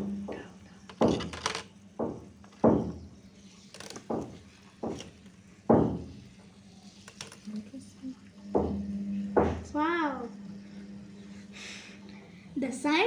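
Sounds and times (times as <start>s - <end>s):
knocks and thunks: 0.3s - 3.2s, 3.8s - 6.2s, 8.5s - 9.8s.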